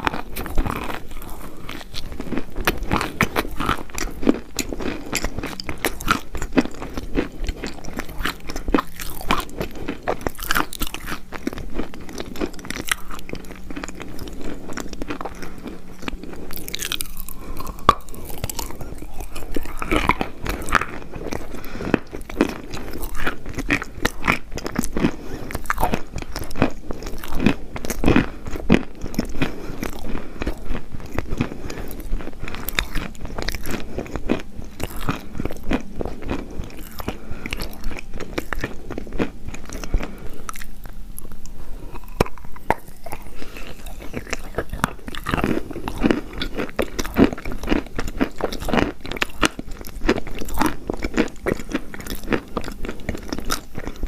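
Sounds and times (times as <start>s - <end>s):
chalk crunching while chewed: 0.0s - 54.0s.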